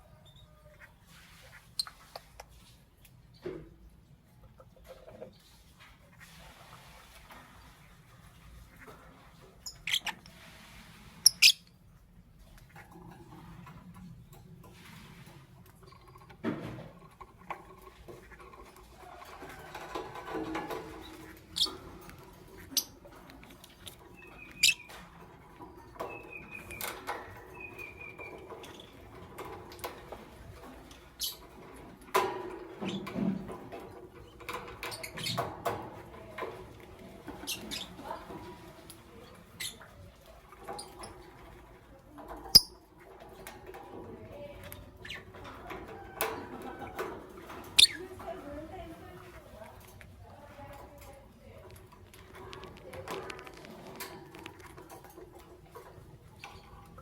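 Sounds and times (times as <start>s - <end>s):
lovebirds chirping: 22.6s - 25.1s, 25.9s - 29.0s.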